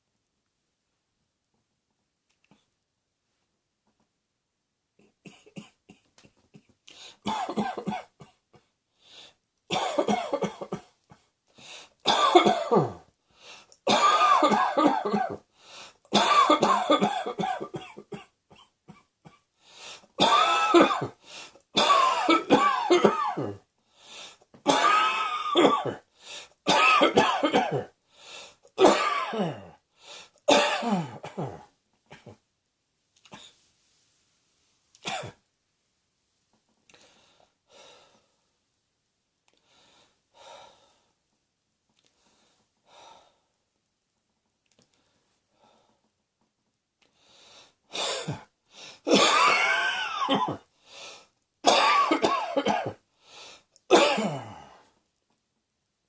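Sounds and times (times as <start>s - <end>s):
person coughing: 5.3s - 8.7s, 9.7s - 11.3s, 12.1s - 13.1s, 13.9s - 15.4s, 16.1s - 19.4s, 20.2s - 21.2s, 21.8s - 23.6s, 24.7s - 26.1s, 26.7s - 28.0s, 28.8s - 29.8s, 30.5s - 32.4s, 35.0s - 35.4s, 48.0s - 48.5s, 49.1s - 50.7s, 51.6s - 53.0s, 53.9s - 54.6s.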